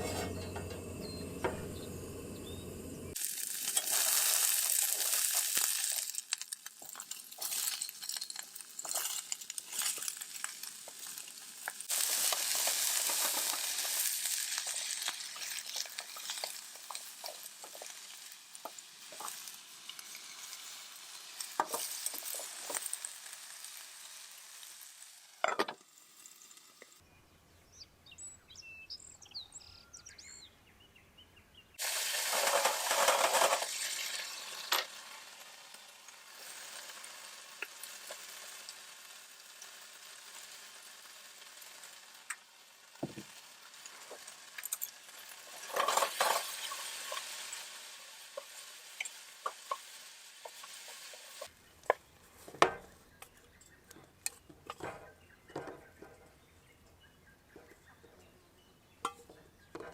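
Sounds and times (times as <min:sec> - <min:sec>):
birds chirping: 0:00.0 - 0:03.2, 0:27.0 - 0:31.8, 0:51.6 - 0:59.9
food sizzling in a frying pan: 0:03.1 - 0:27.0, 0:31.8 - 0:52.9.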